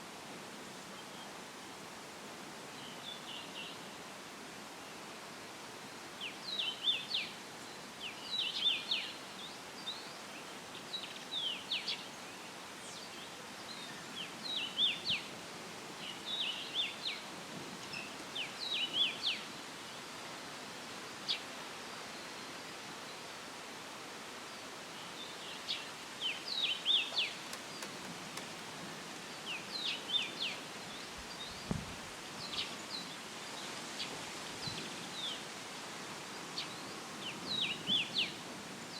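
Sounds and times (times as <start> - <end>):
leaves rustling in breeze: 0.0 - 38.9
songbird chirping: 24.4 - 35.5.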